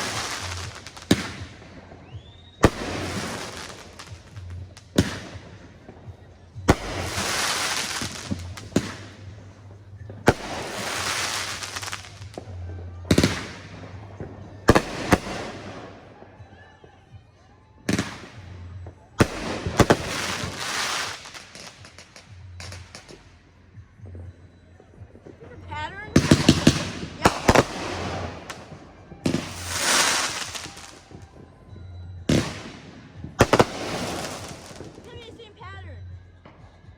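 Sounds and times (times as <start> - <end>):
crackling hiss: 0.0 - 9.5, 10.2 - 13.8, 26.4 - 31.3
fireworks bangs: 0.0 - 17.2, 17.9 - 35.6.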